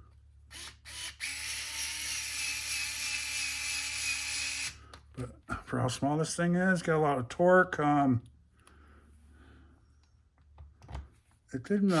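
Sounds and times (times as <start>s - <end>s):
electric screwdriver running: 0.5s - 4.8s.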